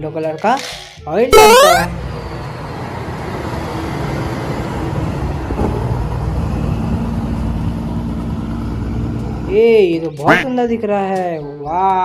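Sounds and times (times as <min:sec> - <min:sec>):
vehicle engine rumbling: 0:01.9 - 0:09.9.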